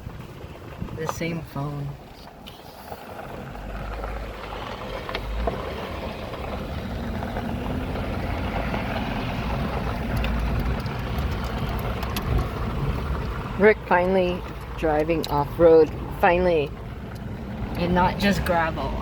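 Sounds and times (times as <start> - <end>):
vehicle rumbling off-road: 0.0 - 19.0
knocks and rattles: 7.2 - 13.4.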